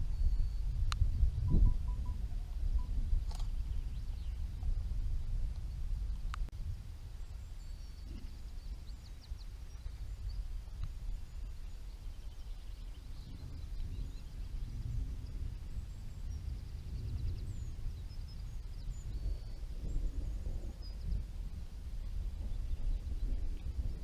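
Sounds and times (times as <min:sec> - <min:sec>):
steady low rumble: 0:00.0 - 0:24.0
small birds chirping: 0:07.2 - 0:21.3.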